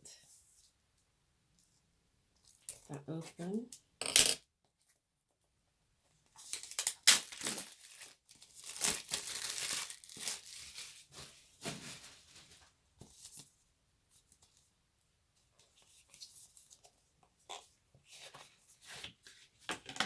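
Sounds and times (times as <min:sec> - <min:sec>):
packaging tearing and crinkling: 0:06.4 - 0:12.2.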